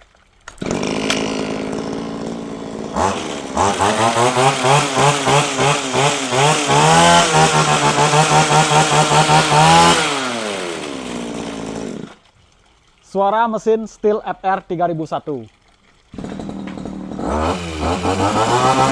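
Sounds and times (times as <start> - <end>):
brush cutter engine revving: 0.6 - 12.2, 16.2 - 18.9.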